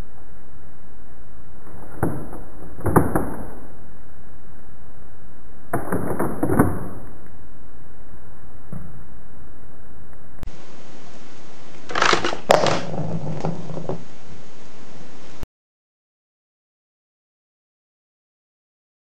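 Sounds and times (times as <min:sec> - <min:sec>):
steady hiss: 0:09.3 - 0:15.4.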